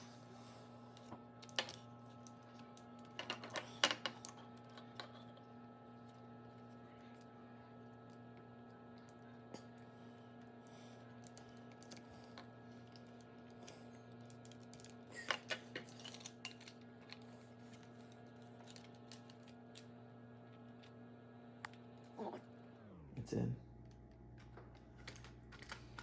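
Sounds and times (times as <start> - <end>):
electrical hum: 0.0 - 26.0.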